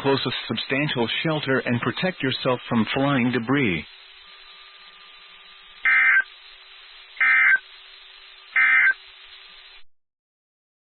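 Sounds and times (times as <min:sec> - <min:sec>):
faint hiss: 0:00.0 - 0:09.9
low steady hum: 0:00.0 - 0:09.9
digital data tone bursts: 0:05.8 - 0:06.3, 0:07.2 - 0:07.7, 0:08.4 - 0:09.0.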